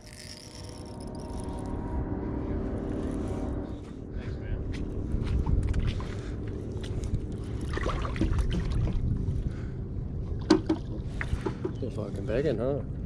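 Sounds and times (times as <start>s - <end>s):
wind rumbling on microphone: 0.1s - 13.0s
water lapping: 5.0s - 12.3s.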